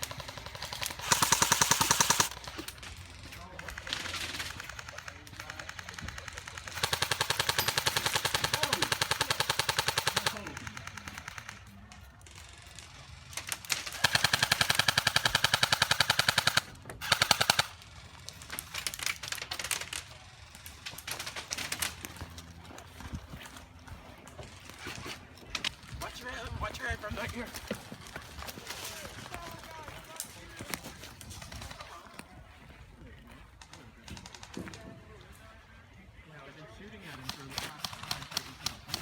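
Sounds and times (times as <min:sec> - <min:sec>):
airsoft guns full-auto bursts: 0:00.0 - 0:22.2, 0:37.1 - 0:39.0.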